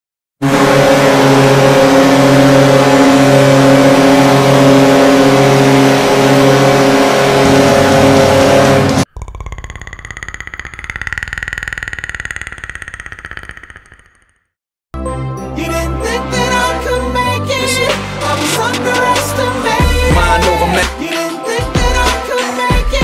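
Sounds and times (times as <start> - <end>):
goal horn blast: 0.4 - 9.1
crowd roaring: 18.6 - 21.0.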